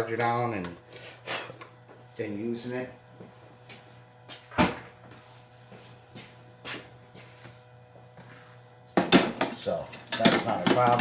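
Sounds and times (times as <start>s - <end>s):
hard objects clunking and knocking: 9.0s - 11.0s.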